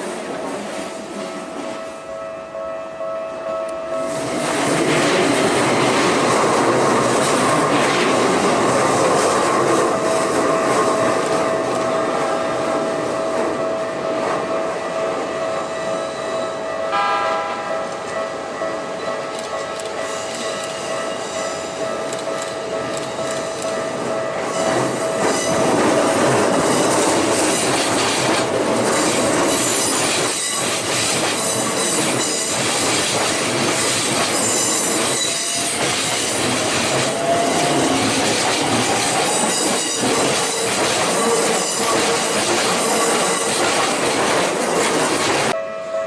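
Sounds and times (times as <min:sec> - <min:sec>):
crossing alarm ringing: 0:01.0 - 0:46.0
train wheels clattering: 0:16.9 - 0:45.6
train wheels squealing: 0:24.5 - 0:26.0, 0:28.9 - 0:33.1, 0:33.8 - 0:44.0.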